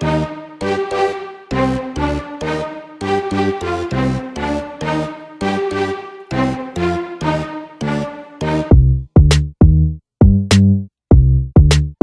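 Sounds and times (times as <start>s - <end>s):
upbeat electronic music: 0.0s - 9.4s
heavy kick drum: 8.7s - 11.8s.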